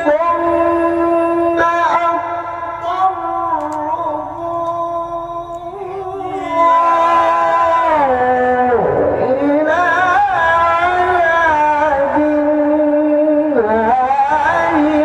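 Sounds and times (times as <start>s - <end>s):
man reciting melismatic chant: 0.0s - 15.0s.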